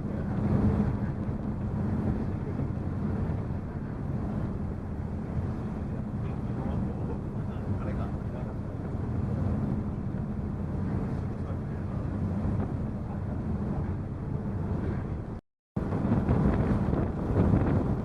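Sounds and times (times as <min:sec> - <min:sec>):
ferry engines droning: 0:00.0 - 0:18.0.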